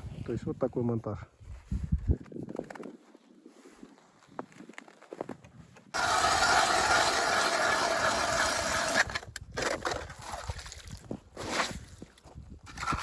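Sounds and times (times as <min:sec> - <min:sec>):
ice auger boring: 0:06.0 - 0:10.4, 0:12.7 - 0:13.0.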